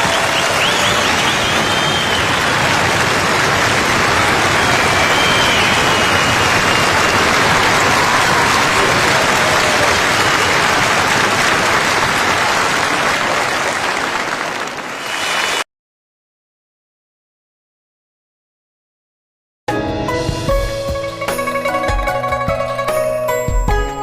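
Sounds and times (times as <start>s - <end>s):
high whistles: 0.0s - 2.8s, 3.9s - 9.0s, 15.0s - 15.6s
crowd applause: 0.0s - 15.7s.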